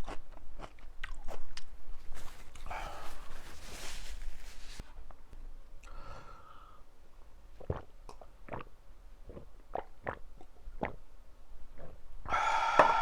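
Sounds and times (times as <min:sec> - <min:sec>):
breathy sound: 0:12.3 - 0:13.0.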